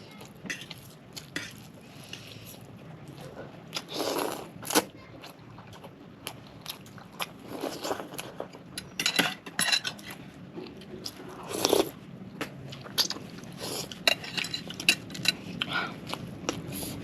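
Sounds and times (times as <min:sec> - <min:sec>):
cutlery clinking on dishes: 0:08.8 - 0:10.2, 0:14.0 - 0:15.5.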